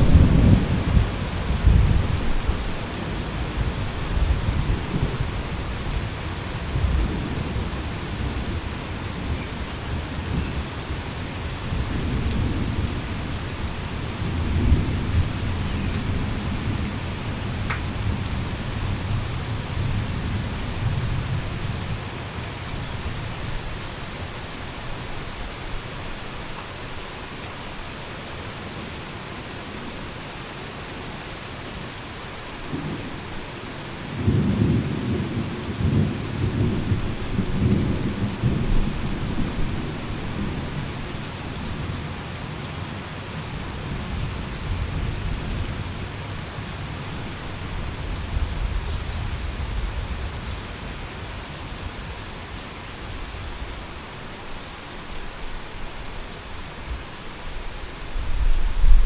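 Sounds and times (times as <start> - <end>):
thunder crack and rumble: 0.0 - 11.1, 34.1 - 41.9, 58.2 - 59.0
heavy rain: 0.0 - 59.0.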